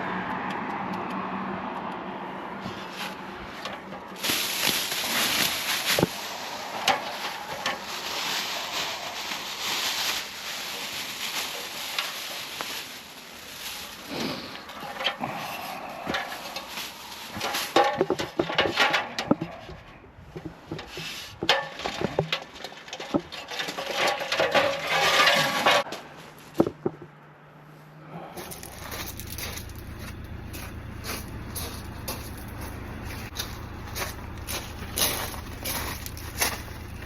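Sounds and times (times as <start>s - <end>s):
hand tools scraping and knocking: 2.6s - 12.6s, 14.1s - 27.1s
steady low hum: 28.4s - 37.0s.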